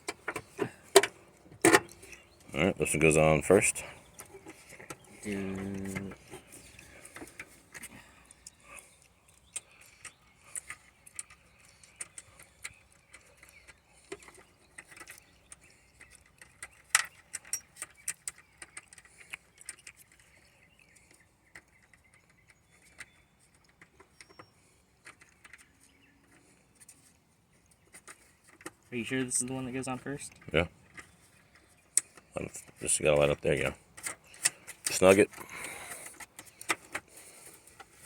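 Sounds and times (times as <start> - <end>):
small metal parts clinking: 9.4 - 20.3.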